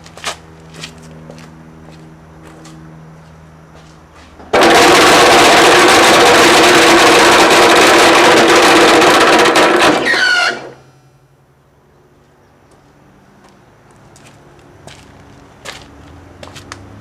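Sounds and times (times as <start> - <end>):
air compressor clattering: 4.4 - 10.8.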